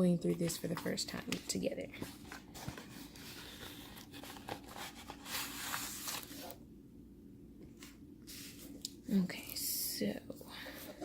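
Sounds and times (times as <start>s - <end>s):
paper packaging rustling: 0.3s - 6.6s.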